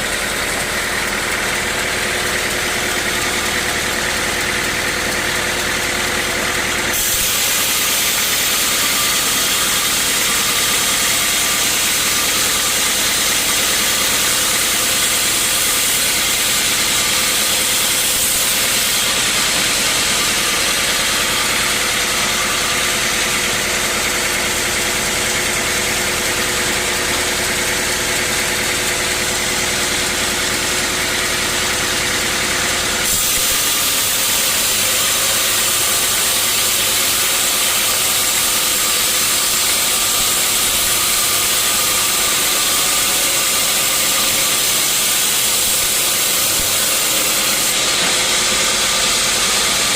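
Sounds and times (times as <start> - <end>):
saw cutting through wood: 0.0 - 49.9.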